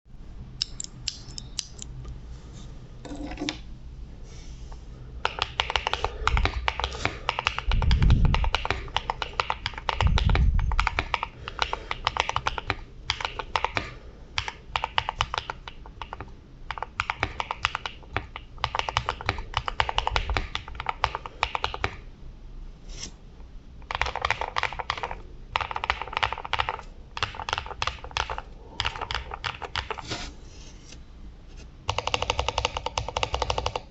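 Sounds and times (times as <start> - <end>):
mechanical keyboard typing: 5.2 - 22.0, 23.8 - 30.0, 31.9 - 33.9.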